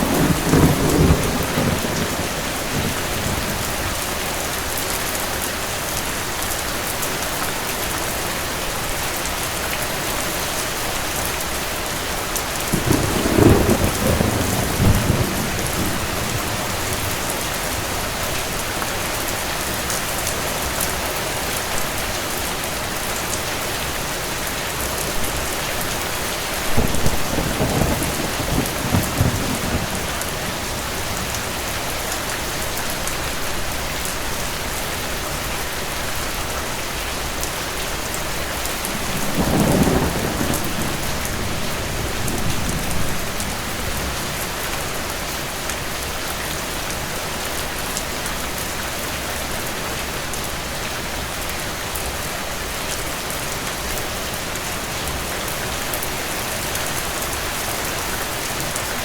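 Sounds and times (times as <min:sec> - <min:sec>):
distant thunder rumbling: 0:00.0 - 0:04.0, 0:12.7 - 0:18.0, 0:26.6 - 0:31.6, 0:38.7 - 0:44.4
steady rain: 0:00.0 - 0:59.0.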